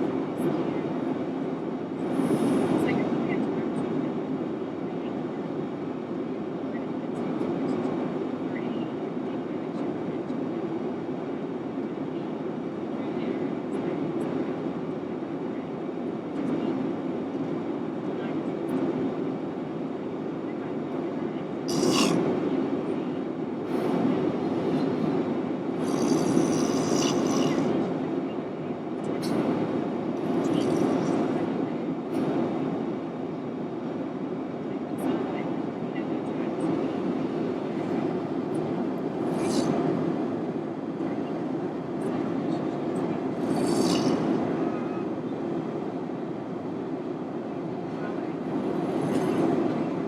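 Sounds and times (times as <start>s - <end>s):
airplane cabin drone: 0.0s - 50.0s
man snoring heavily: 21.7s - 22.2s, 25.8s - 27.7s, 43.4s - 44.2s.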